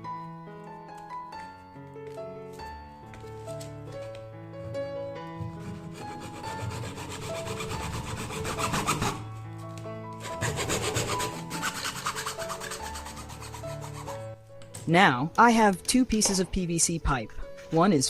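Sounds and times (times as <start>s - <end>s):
saw cutting plastic pipe: 5.4s - 9.3s, 10.2s - 14.4s.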